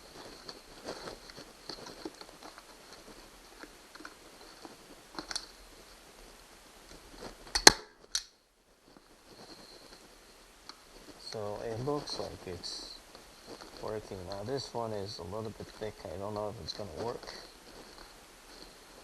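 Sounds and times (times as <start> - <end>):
handling rustles and clicks: 0.0 - 19.0.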